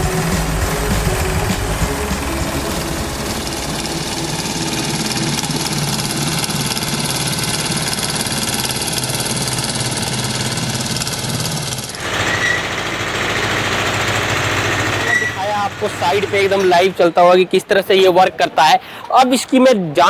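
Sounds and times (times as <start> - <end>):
diesel engine running steadily: 0.0 - 17.0.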